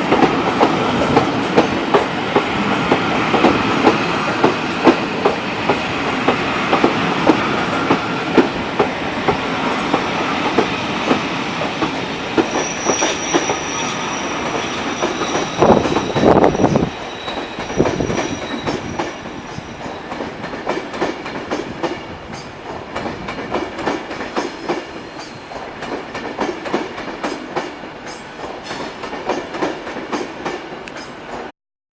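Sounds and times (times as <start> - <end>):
train wheels clicking over rail joints: 0.0 - 13.6, 14.4 - 31.5
thin high squeal: 12.5 - 20.1.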